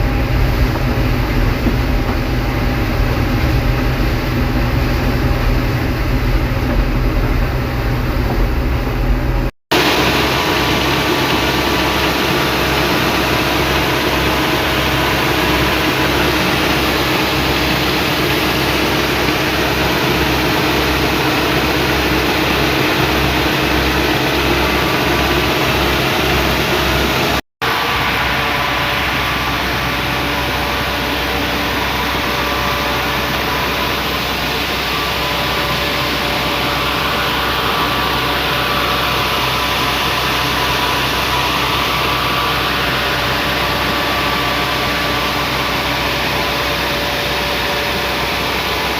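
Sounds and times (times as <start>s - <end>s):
combine harvester engine drone: 0.0s - 48.9s.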